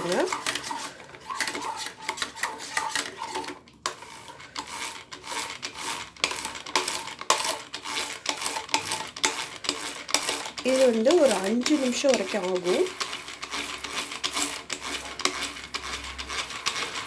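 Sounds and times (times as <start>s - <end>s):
beater clinking against bowl: 0.0s - 17.0s.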